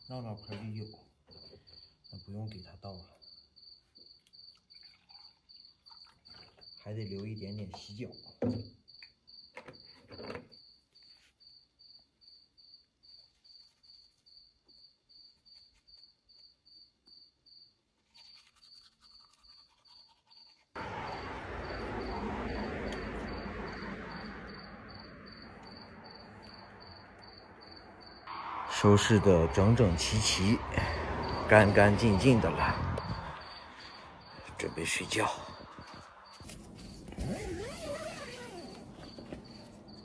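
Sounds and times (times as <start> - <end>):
crickets chirping: 0.0 - 40.0
steady rushing noise: 20.8 - 36.6.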